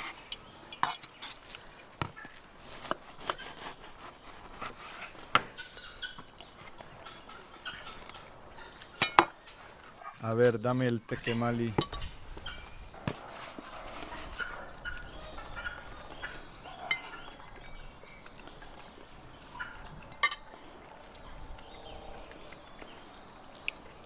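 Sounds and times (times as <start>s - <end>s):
faint background sounds: 0.0s - 24.0s
tableware clinking: 9.0s - 9.4s, 11.8s - 12.1s, 20.1s - 20.5s.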